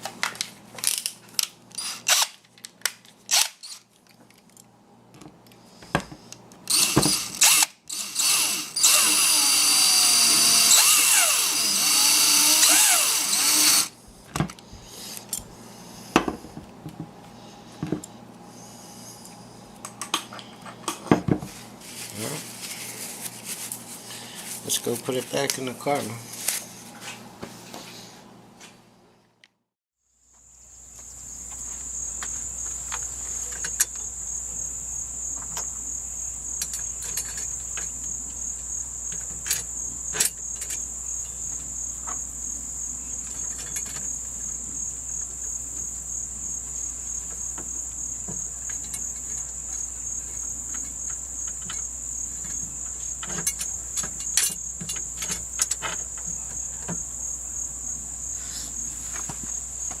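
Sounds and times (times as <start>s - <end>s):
crickets chirring: 6.7s - 14.0s, 30.1s - 60.0s.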